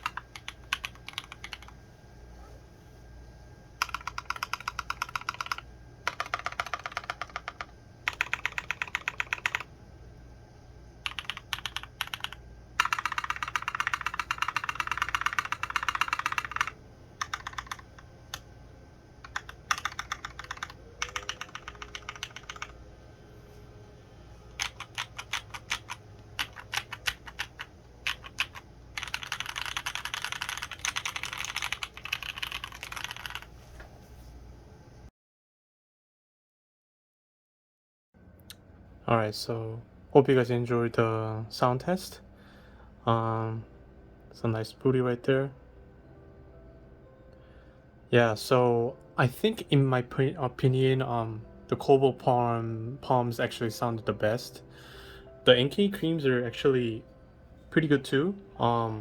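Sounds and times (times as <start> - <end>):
mechanical keyboard typing: 0.0 - 1.8, 3.8 - 9.7, 11.0 - 18.5, 19.2 - 22.8, 24.6 - 33.5.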